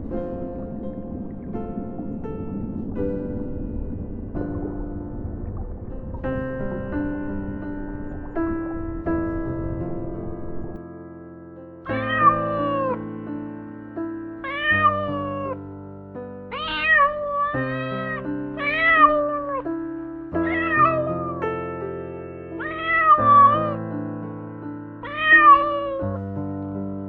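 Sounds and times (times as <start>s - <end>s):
soft piano music: 0.0s - 27.0s
cat meowing: 11.9s - 13.1s, 14.4s - 15.7s, 16.5s - 19.7s, 20.4s - 21.4s, 22.5s - 23.8s, 25.0s - 26.2s.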